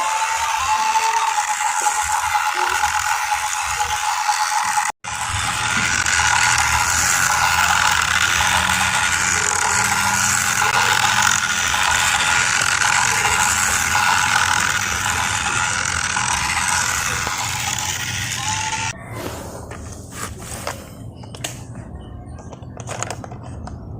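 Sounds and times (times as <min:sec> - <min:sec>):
toy train motor whirring: 0:00.0 - 0:19.0.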